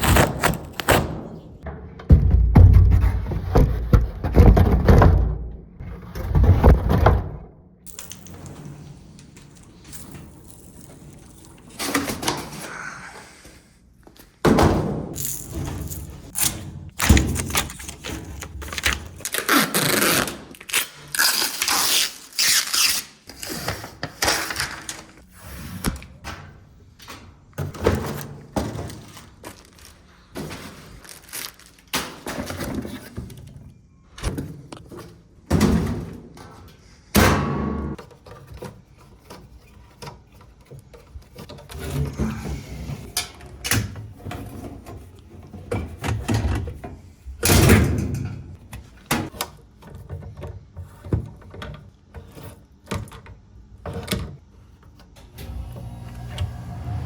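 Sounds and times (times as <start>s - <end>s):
thuds and knocks: 1.6s - 5.6s.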